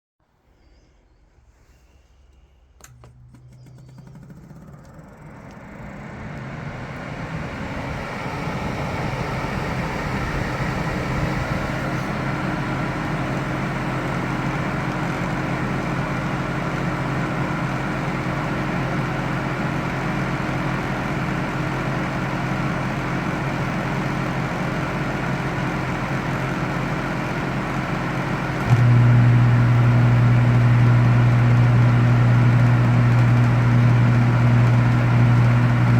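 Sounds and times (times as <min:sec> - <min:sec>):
dehumidifier fan whooshing: 0:01.5 - 0:15.8, 0:28.4 - 0:35.9
loud low hum: 0:01.8 - 0:23.5, 0:28.6 - 0:35.9.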